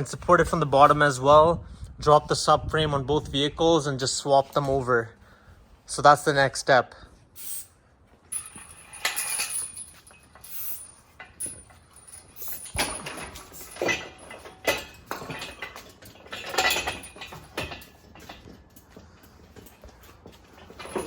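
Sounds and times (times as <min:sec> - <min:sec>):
metal clattering: 0:08.3 - 0:21.0
metal tools clinking: 0:08.3 - 0:21.0.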